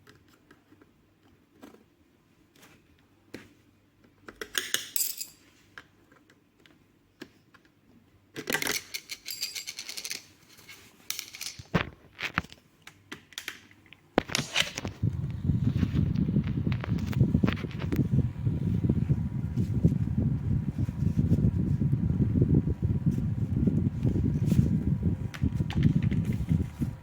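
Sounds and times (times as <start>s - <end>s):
low rumbling noise: 14.8s - 27.0s
sharp clicks of fan parts: 23.7s - 27.0s.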